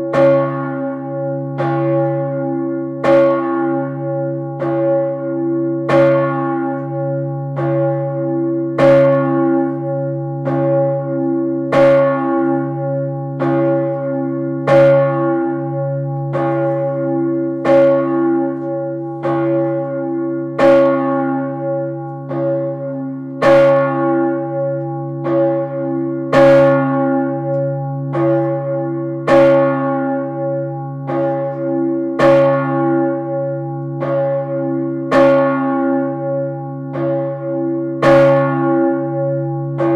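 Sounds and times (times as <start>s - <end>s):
large church bell ringing: 0.0s - 39.9s.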